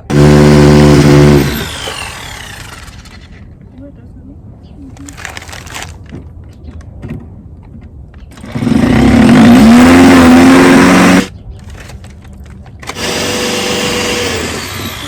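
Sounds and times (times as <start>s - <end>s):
electric drill whining: 0.0s - 3.4s, 8.4s - 11.3s, 12.8s - 15.0s.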